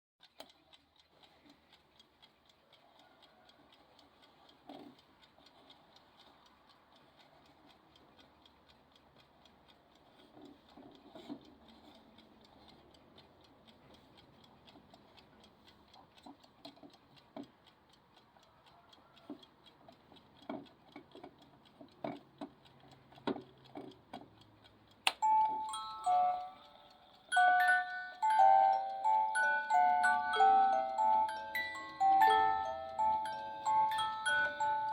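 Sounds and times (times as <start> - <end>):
alarm clock ticking: 0.2 - 34.9
alarm chiming melody: 25.2 - 34.9.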